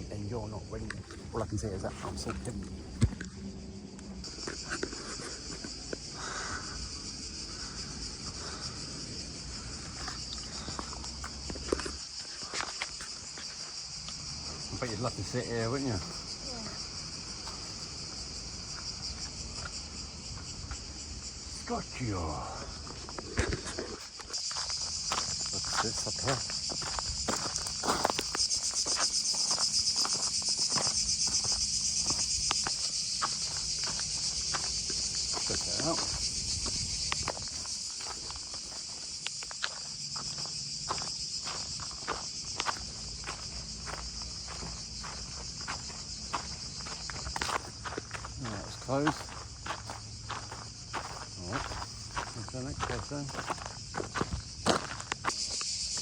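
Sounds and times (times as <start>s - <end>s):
cicadas buzzing: 0.0s - 56.0s
faint footsteps: 22.6s - 56.0s.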